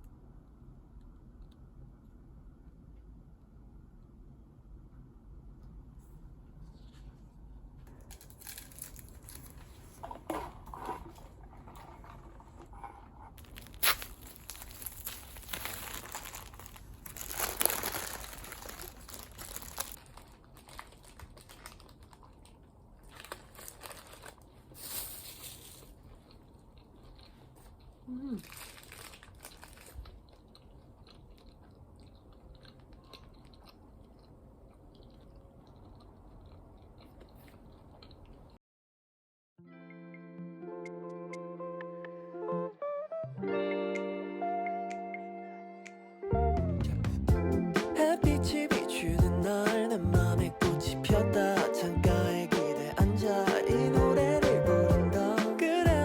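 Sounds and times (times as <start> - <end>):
low room hum: 0.0 - 38.6
quiet chewing: 7.8 - 24.8, 25.8 - 38.6.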